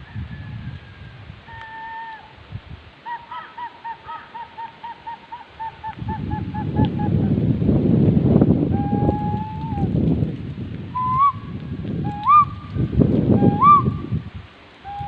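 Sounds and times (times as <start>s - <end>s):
wind buffeting microphone: 0.0s - 3.3s, 4.6s - 15.0s
bird whistling: 3.1s - 7.2s, 11.0s - 11.4s, 12.1s - 12.6s, 13.3s - 14.1s.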